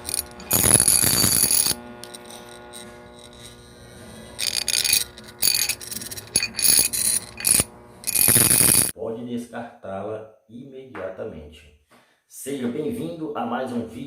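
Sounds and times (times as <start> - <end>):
harsh electrical buzzing: 0.0 - 8.9
transformer humming: 0.0 - 8.9.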